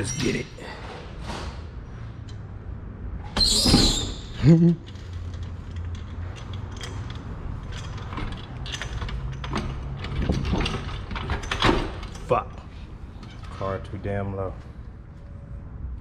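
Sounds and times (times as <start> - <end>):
metal creaking: 0.0 - 2.4, 3.2 - 13.9
loud high squeal: 3.4 - 4.4.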